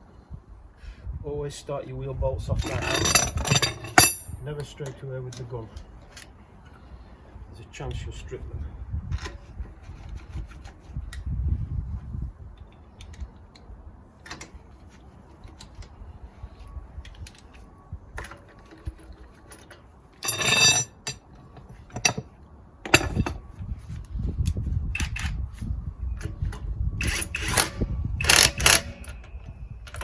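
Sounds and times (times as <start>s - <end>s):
clicks of tools and bolts: 18.2s - 23.4s.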